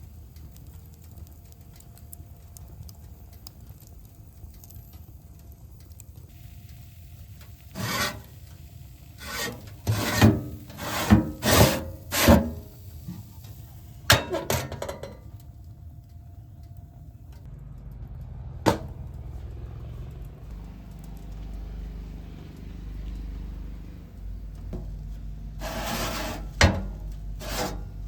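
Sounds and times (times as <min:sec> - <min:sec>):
rough scraping strokes: 0:07.7 - 0:08.4, 0:09.2 - 0:12.7, 0:25.5 - 0:28.0.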